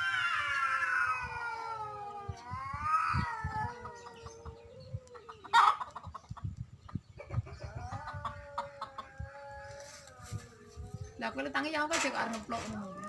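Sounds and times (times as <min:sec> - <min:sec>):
cat yowling: 0:00.0 - 0:05.7.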